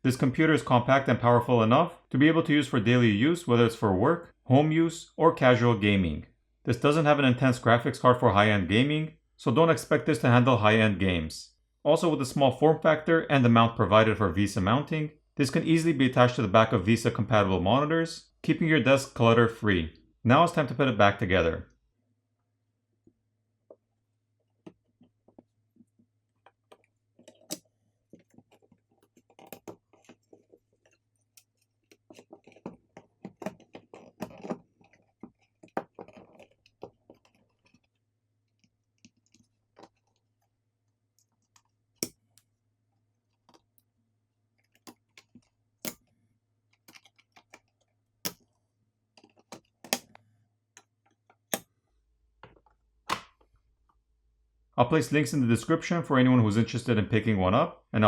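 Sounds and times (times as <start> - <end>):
clicks and taps of small parts: 49.2 - 51.7.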